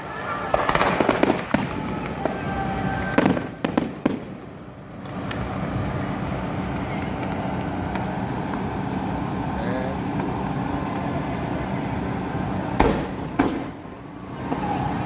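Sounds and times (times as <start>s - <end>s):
firework shells bursting: 0.0s - 9.3s, 12.8s - 14.8s.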